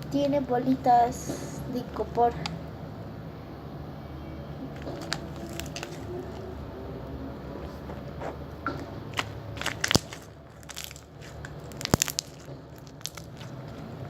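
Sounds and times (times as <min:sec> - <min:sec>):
crunchy slime crackling and popping: 0:04.8 - 0:06.5, 0:08.7 - 0:14.0.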